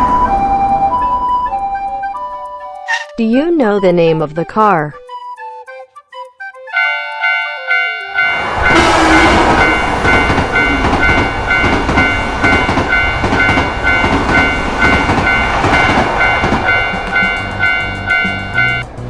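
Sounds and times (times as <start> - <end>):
railroad crossing bell ringing: 6.8 - 18.9
train rattling past: 6.8 - 19.0.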